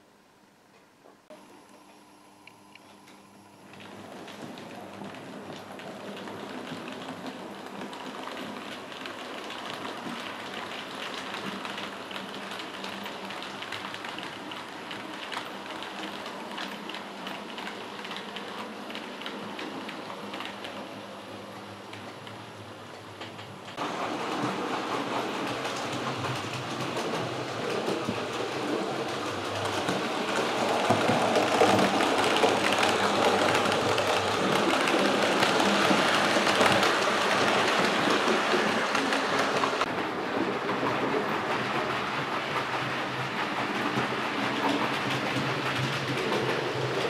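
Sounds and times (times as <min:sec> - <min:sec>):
model train wheels clicking: 0:23.2 - 0:47.0.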